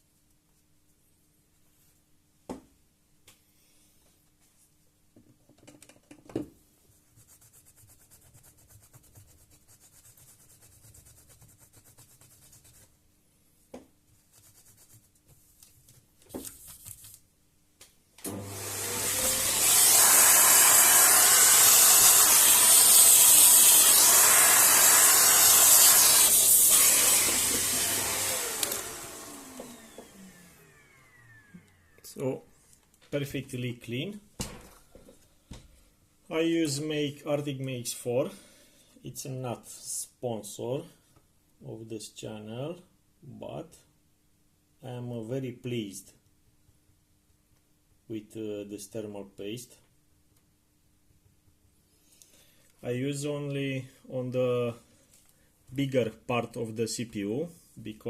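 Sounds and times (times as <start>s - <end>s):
electric cleaning tool motor hissing: 18.3s - 32.0s.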